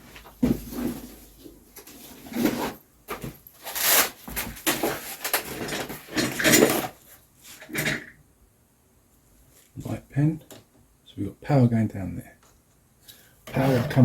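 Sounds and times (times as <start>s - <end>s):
tools scraping and clattering: 0.1s - 8.2s.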